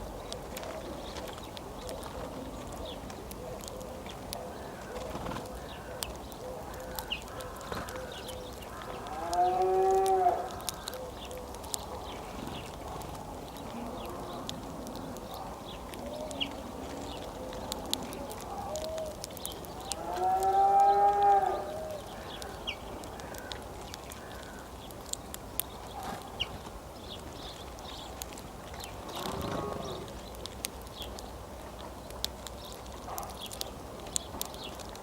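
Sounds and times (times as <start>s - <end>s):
high chirps and ticks: 5.4s - 35.0s
cow mooing: 20.0s - 21.7s.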